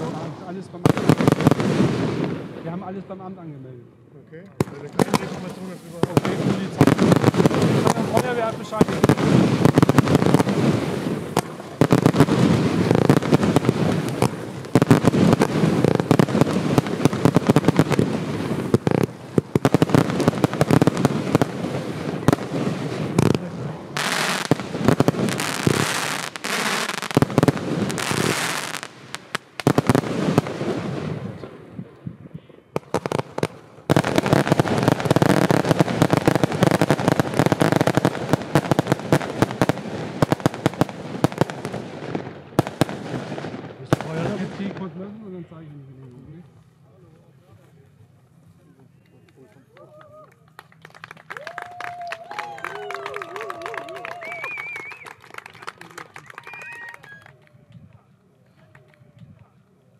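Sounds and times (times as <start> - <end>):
loud fireworks hissing: 0.0 - 3.1, 4.6 - 31.7, 32.5 - 45.8
fireworks crackling: 0.0 - 3.6, 4.5 - 47.8, 48.5 - 59.5.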